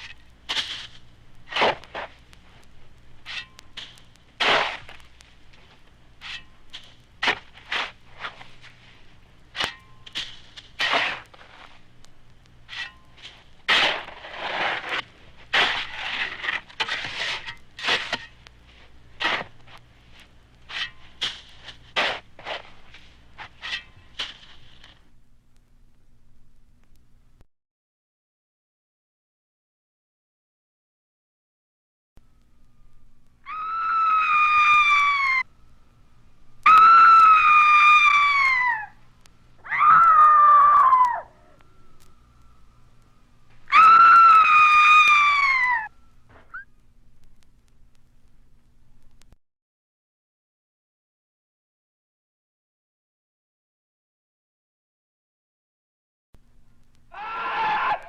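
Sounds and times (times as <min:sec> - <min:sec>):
irregular scraping and crunching: 0:00.0 - 0:27.4, 0:32.2 - 0:49.4
long high-pitched screams: 0:33.4 - 0:35.5, 0:36.7 - 0:39.0, 0:39.6 - 0:41.6, 0:43.7 - 0:45.9, 0:57.1 - 0:58.0.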